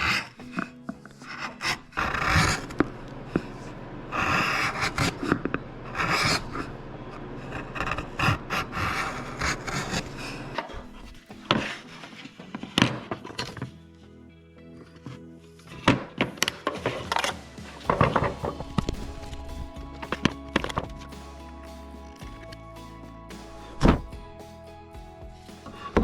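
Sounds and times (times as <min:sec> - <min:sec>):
hand tool scraping wood: 0:00.0 - 0:05.3.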